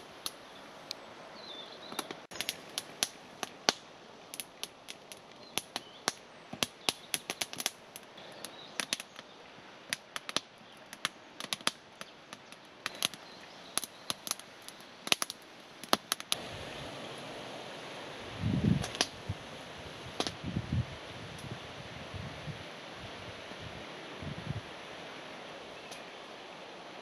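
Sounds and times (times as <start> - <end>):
steady hiss: 0.0 - 27.0
dry wood crackling and popping: 1.9 - 9.3, 9.9 - 16.4, 18.8 - 19.2, 20.2 - 20.4.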